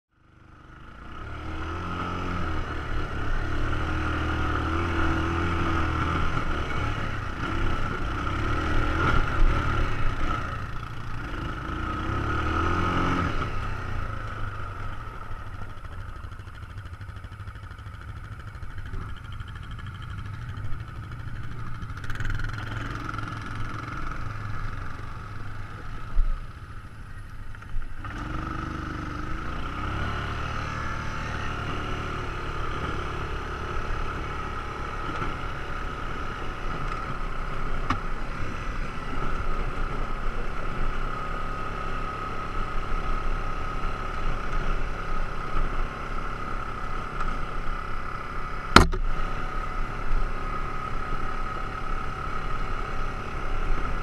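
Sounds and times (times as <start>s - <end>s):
atv engine revving: 0.2s - 54.0s
sharp thump: 48.7s - 49.1s.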